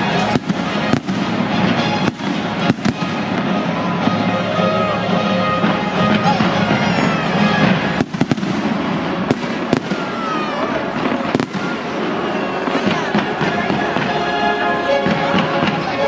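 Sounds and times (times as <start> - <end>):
steady din: 0.0 - 15.9
fireworks bangs: 0.0 - 16.0
music: 0.0 - 16.0.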